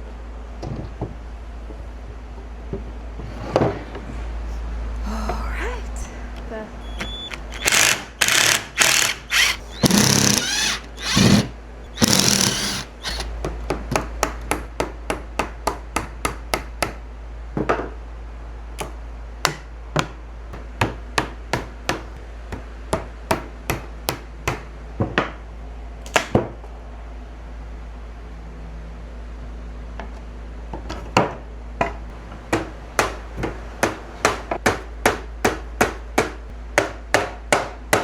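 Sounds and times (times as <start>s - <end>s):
hammer knocking on wood: 32.5s - 38.0s.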